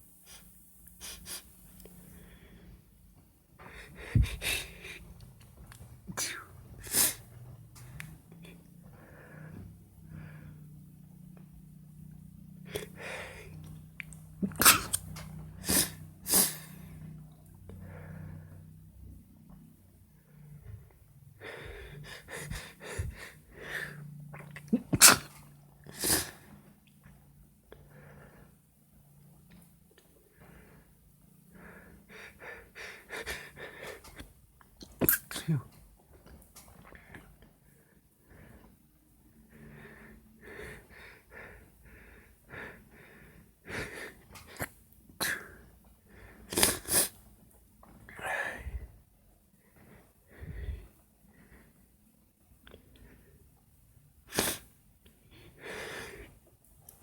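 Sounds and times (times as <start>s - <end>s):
quick catching breaths: 3.6s - 8.2s, 21.4s - 24.1s, 30.3s - 34.4s
person sneezing: 14.4s - 16.6s, 24.8s - 26.4s, 34.9s - 35.7s.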